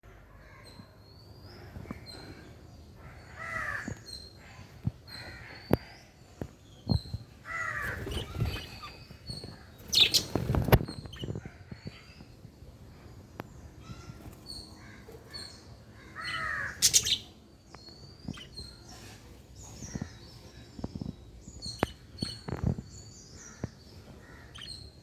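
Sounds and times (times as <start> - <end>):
lovebirds squawking: 7.4 - 12.1, 15.9 - 17.3.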